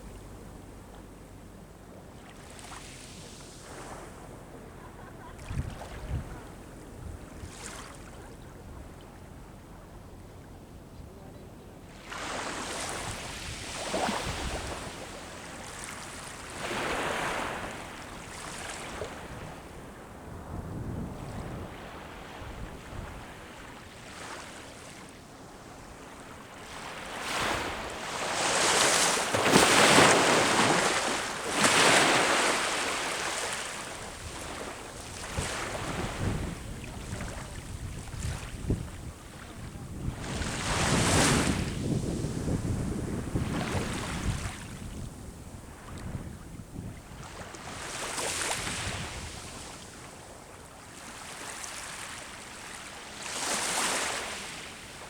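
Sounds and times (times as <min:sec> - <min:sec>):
sea waves breaking on shore: 0:02.1 - 0:04.4, 0:05.4 - 0:08.4, 0:11.9 - 0:55.0
wind buffeting microphone: 0:05.4 - 0:07.6, 0:33.9 - 0:49.7.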